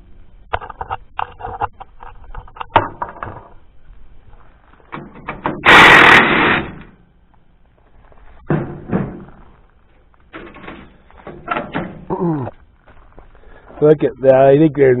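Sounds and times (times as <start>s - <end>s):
metal knocks and rattles: 8.4s - 9.6s, 10.3s - 12.1s.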